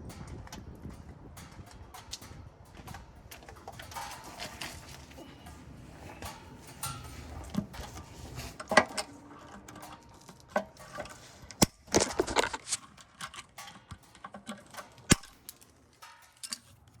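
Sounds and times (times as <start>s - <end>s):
clicks and knocks clattering: 0.0s - 17.0s.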